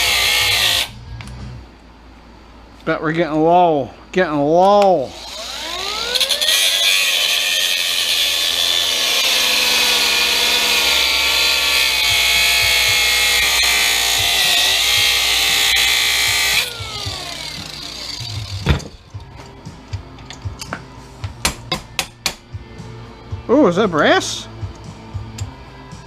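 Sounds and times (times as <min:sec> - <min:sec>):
grinder cutting metal: 0:00.0 - 0:01.0, 0:05.1 - 0:18.8.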